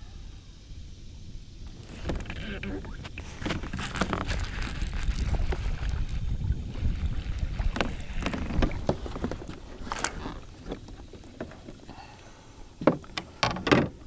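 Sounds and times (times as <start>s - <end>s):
wind buffeting microphone: 0.7s - 11.2s.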